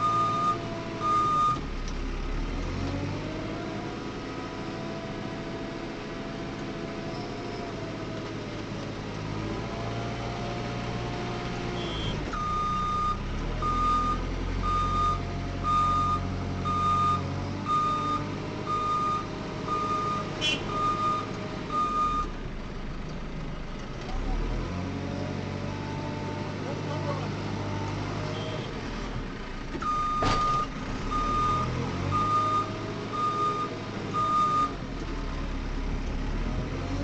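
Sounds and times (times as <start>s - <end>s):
diesel engine revving: 0.0s - 37.0s
reversing alarm beeping: 11.8s - 22.3s, 29.8s - 34.7s.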